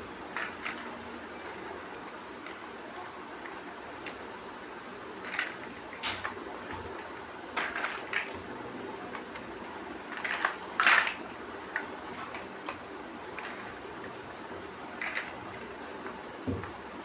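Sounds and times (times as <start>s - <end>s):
plastic bricks clicking: 7.6s - 8.4s, 10.2s - 11.2s.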